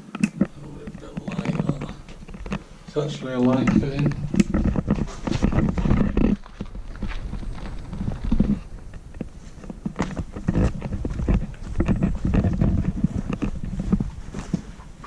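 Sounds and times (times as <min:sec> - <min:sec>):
footsteps knocking and scraping: 0:00.0 - 0:15.0
low rumble: 0:03.8 - 0:15.0.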